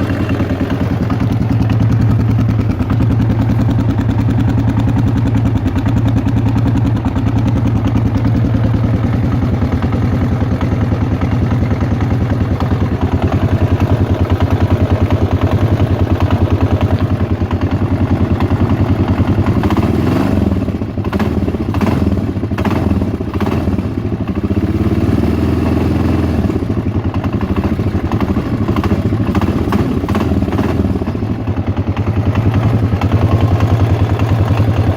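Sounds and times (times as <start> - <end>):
sharp engine clicks: 0.0 - 23.8
motorcycle engine idling: 0.0 - 34.9.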